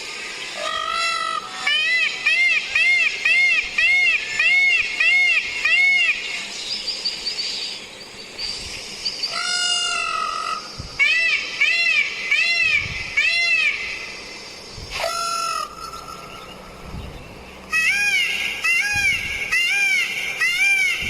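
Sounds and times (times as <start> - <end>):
peacock calling: 0.4 - 6.5, 9.3 - 14.1, 14.9 - 16.9, 17.6 - 21.0.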